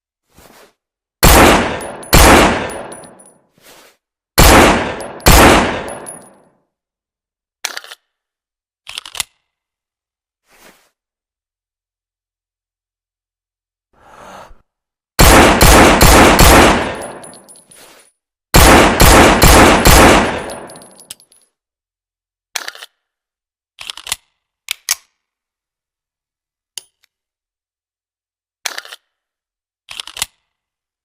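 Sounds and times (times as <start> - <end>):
pistol shots: 1.2 - 3.1, 4.4 - 6.3, 15.2 - 17.3, 18.6 - 20.9.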